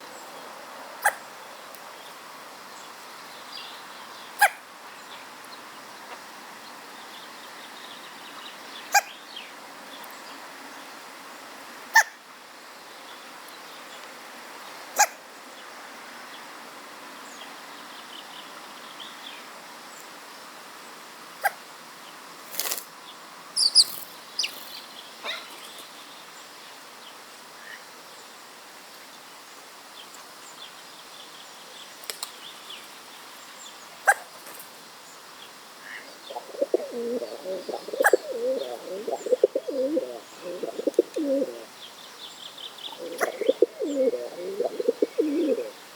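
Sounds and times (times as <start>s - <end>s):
background hiss: 0.0s - 45.9s
crow fledgling hiccuping: 1.0s - 1.2s, 36.5s - 41.5s, 43.0s - 45.7s.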